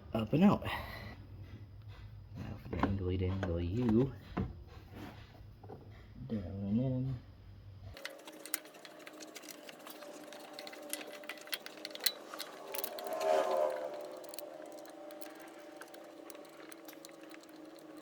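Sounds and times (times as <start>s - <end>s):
metal tool clicks and clinks: 8.0s - 18.0s
rustling: 8.0s - 18.0s.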